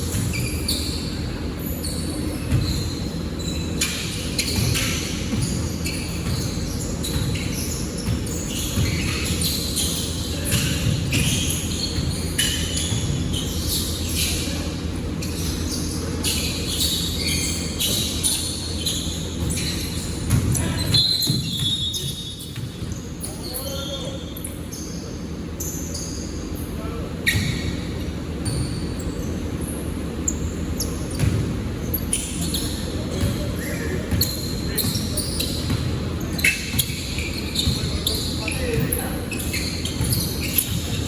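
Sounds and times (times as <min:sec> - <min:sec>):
shoe squeaks: 0:00.0 - 0:41.0
basketball bouncing on hardwood: 0:08.0 - 0:09.3, 0:20.3 - 0:23.0, 0:35.6 - 0:36.0.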